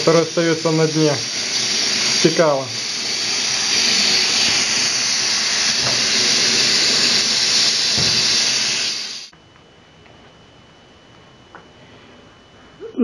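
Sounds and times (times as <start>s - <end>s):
air hissing from compressor valve: 0.0s - 9.3s.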